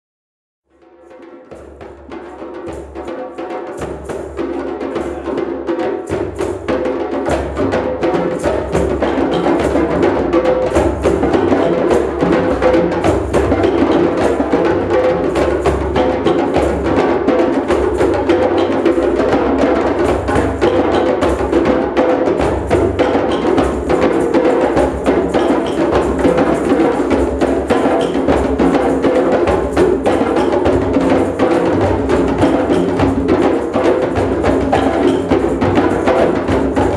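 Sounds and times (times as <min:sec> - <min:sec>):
drum circle playing: 0:00.7 - 0:36.9.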